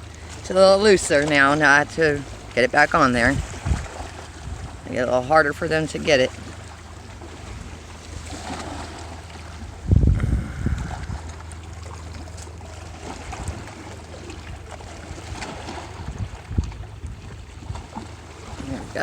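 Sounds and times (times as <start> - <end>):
wind rumble on microphone: 0.0 - 5.4, 7.2 - 19.0
light water noise: 0.0 - 19.0
wind gust buffeting microphone: 3.2 - 4.9, 9.6 - 11.6, 15.9 - 17.8.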